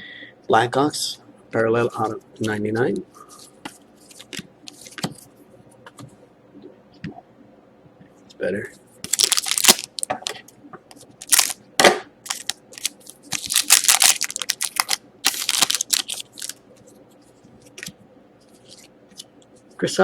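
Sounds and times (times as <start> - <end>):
wrapper crinkling: 9.0 - 10.4, 11.2 - 11.6, 12.2 - 16.6.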